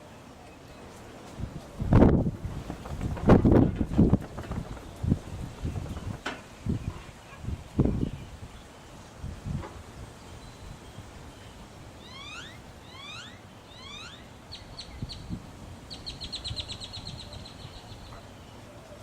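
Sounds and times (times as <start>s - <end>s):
mockingbird singing: 12.0s - 18.7s.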